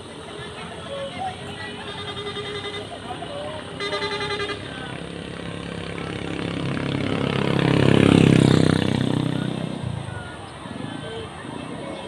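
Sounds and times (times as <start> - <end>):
vehicle engine passing by: 4.6 - 12.0.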